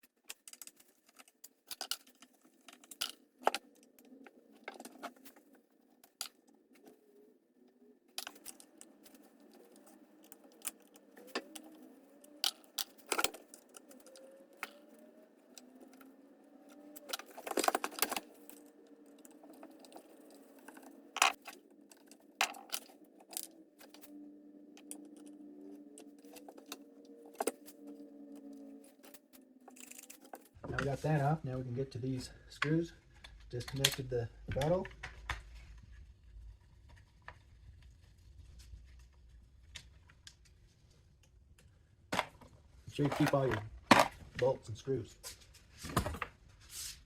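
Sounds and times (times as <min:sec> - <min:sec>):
hand tools and parts clattering: 0:00.0 - 0:07.2, 0:08.1 - 0:30.6, 0:42.2 - 0:44.5.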